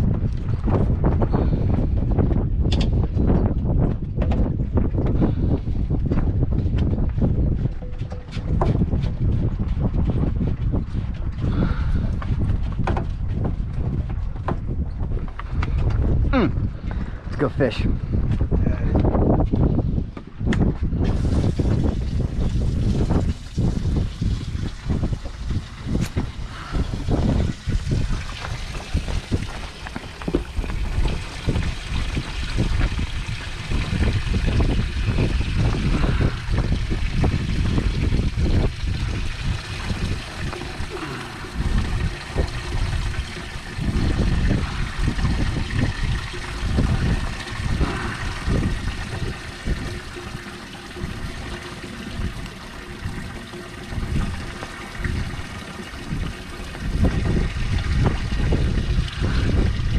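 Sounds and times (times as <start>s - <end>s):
wind buffeting microphone: 0.0s - 59.9s
water trickling and splashing: 5.0s - 14.8s, 21.0s - 59.9s.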